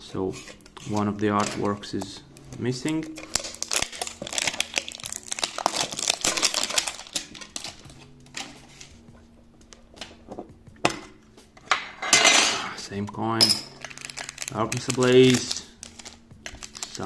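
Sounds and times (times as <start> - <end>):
soft background music: 0.0 - 17.0
plastic packaging crinkling: 0.4 - 9.0, 13.6 - 17.0.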